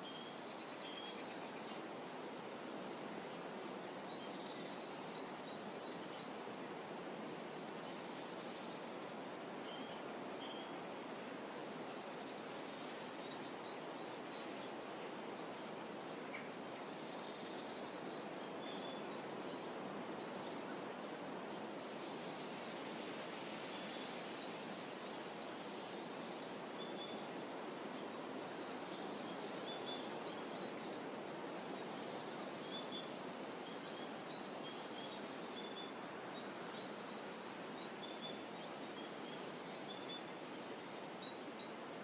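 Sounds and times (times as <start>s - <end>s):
shoreline hiss: 21.3s - 41.1s.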